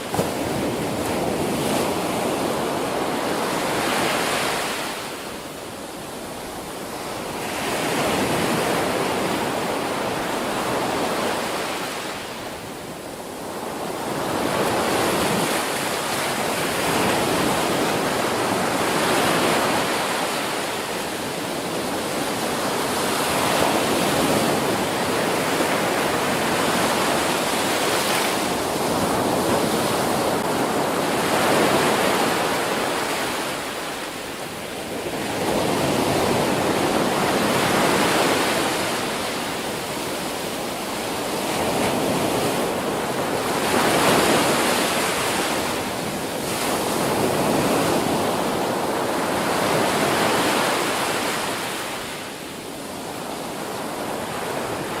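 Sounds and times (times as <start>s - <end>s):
ocean waves breaking on a beach: 0.0s - 55.0s.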